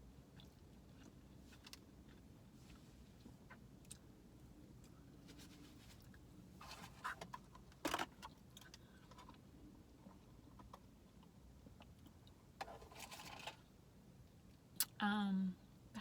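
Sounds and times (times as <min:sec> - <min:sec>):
person chewing: 0:00.3 - 0:04.1.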